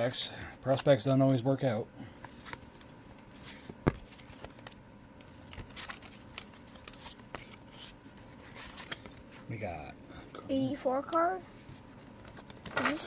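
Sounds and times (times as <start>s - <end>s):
cards rustling: 2.2s - 9.6s, 12.0s - 13.0s.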